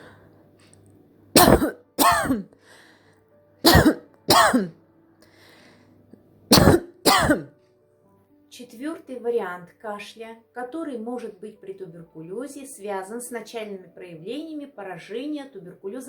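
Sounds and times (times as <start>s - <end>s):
person dry coughing: 1.4s - 2.5s, 3.7s - 4.7s, 6.5s - 7.5s.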